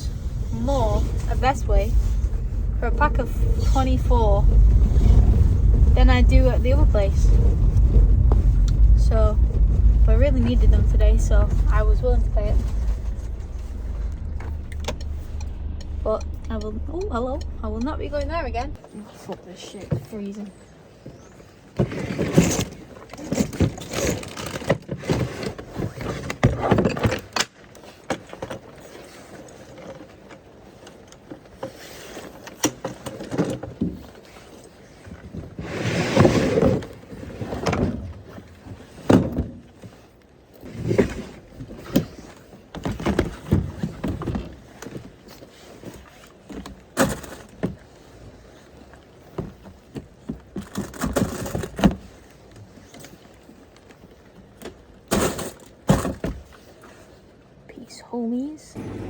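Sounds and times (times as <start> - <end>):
rustling of things handled: 18.3 - 57.7.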